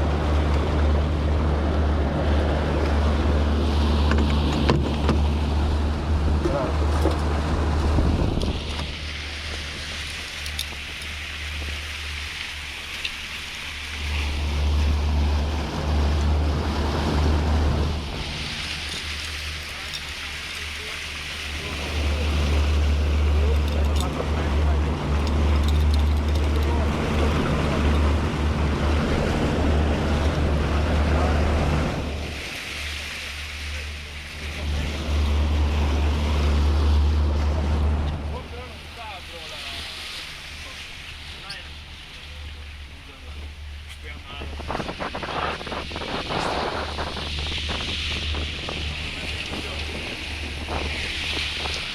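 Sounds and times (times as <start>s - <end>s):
wind on microphone: 0.0s - 10.1s, 44.4s - 51.9s
boat engine drone: 0.0s - 51.9s
water rushing: 0.0s - 51.9s
wind: 0.0s - 51.9s.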